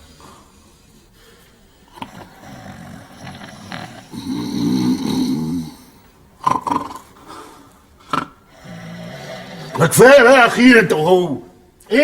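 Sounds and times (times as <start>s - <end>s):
men snoring loudly: 1.9s - 7.2s, 8.0s - 9.8s.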